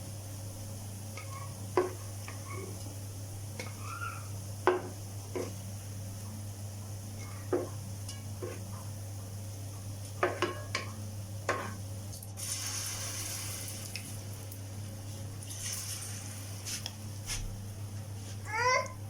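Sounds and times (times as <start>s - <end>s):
oil sizzling: 0.0s - 16.9s
utensil scraping a frying pan: 5.3s - 5.6s, 7.2s - 8.7s, 11.5s - 11.8s.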